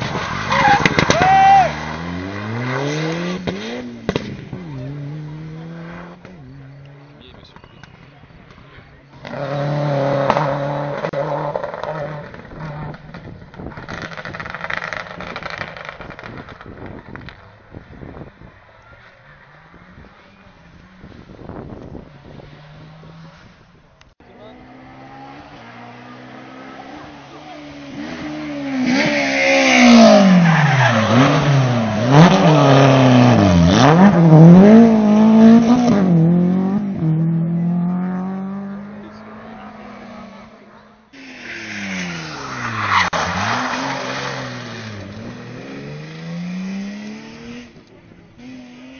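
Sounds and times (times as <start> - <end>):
rally car engine revving: 0.0 - 48.9
car rushing past crackling: 9.1 - 23.8, 24.7 - 48.6.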